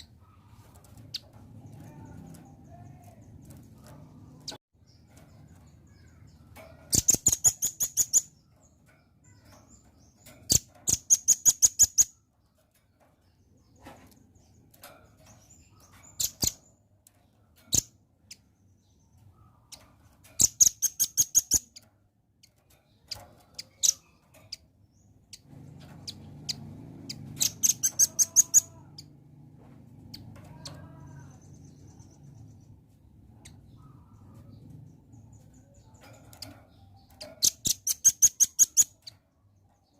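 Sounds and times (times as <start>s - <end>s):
bird rattling high chips: 6.7s - 8.4s, 9.2s - 12.2s, 20.2s - 21.8s, 36.1s - 39.1s.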